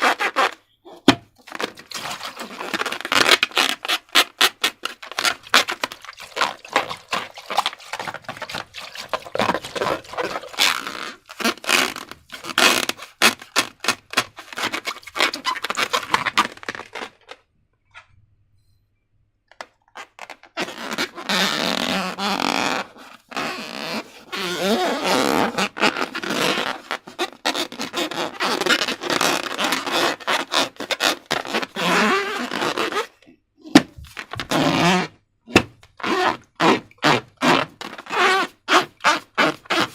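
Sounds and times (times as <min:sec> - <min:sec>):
slime squelching: 0:00.8 - 0:17.4.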